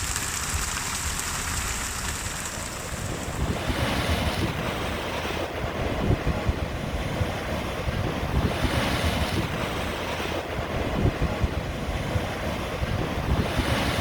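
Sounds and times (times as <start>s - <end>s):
rain hissing: 0.0s - 5.4s
wind rumbling on microphone: 0.0s - 14.0s.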